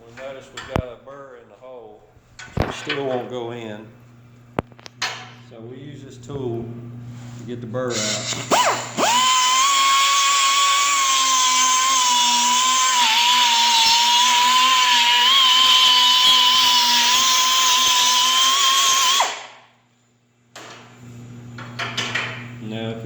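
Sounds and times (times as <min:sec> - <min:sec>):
rotary power tool whine: 0:08.0 - 0:19.6.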